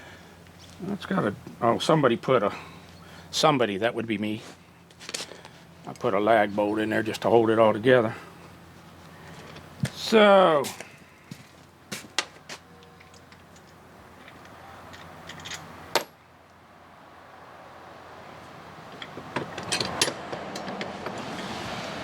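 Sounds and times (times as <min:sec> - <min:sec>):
metal tools clinking: 0:12.7 - 0:16.2, 0:18.9 - 0:20.8.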